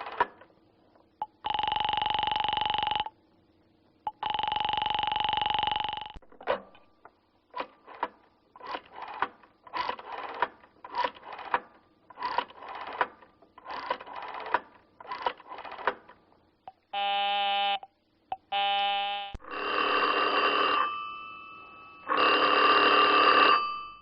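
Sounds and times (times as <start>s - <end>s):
buzzy telephone ringing: 1.3s - 3.1s, 4.1s - 6.2s, 18.6s - 24.0s
rotary phone dial clicking: 7.6s - 16.0s.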